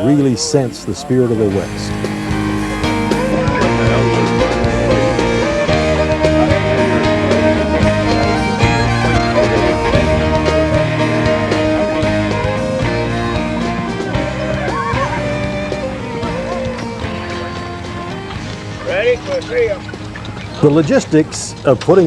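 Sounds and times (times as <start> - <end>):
instrumental guitar music: 0.0 - 3.6.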